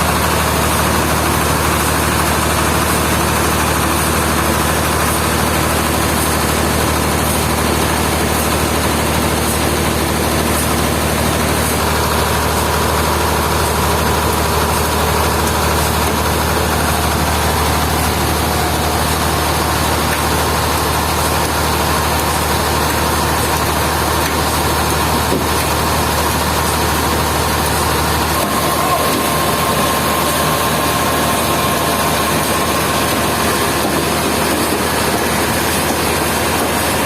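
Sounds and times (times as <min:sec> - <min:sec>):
heavy engine droning: 0:23.5 - 0:37.0
thin steady whine: 0:28.2 - 0:36.2.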